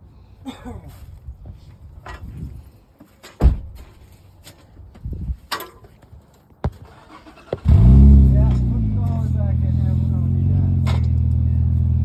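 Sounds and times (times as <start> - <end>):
metal knocks and clanks: 3.1 - 4.1
heavy thud of scrap metal: 3.3 - 4.0.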